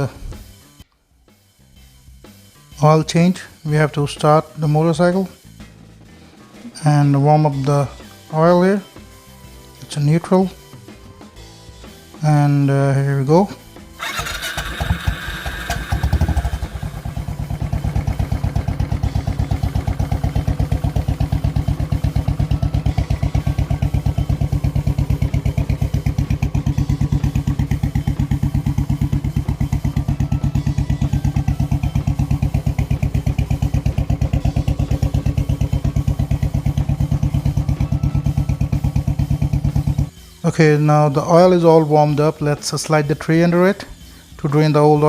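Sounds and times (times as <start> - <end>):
motorcycle engine idling: 14.0 - 40.1.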